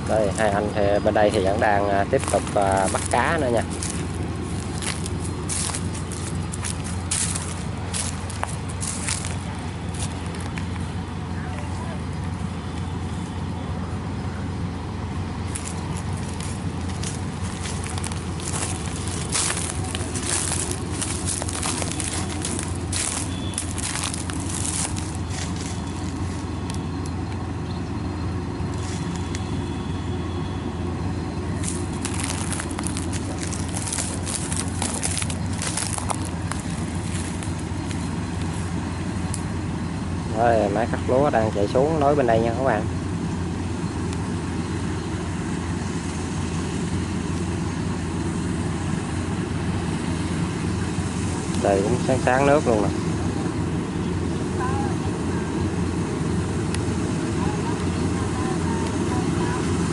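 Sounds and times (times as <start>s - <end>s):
diesel engine running under load: 0.0s - 59.9s
irregular crackling: 15.5s - 26.8s, 31.5s - 39.5s.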